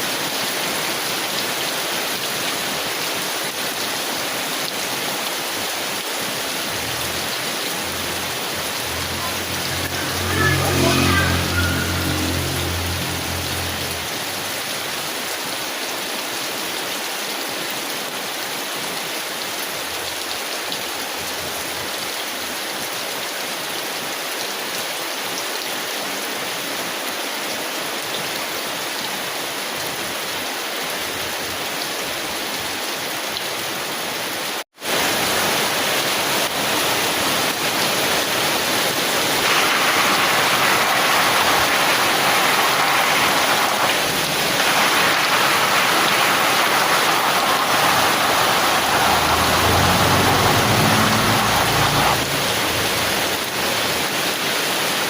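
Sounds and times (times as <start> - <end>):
heavy rain on a tin umbrella: 0.0 - 55.0.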